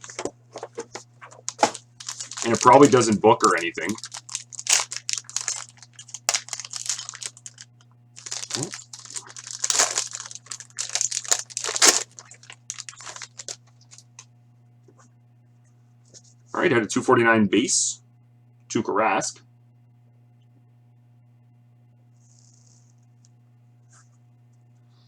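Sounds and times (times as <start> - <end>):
plastic wrapper crinkling and tearing: 0.0 - 14.2.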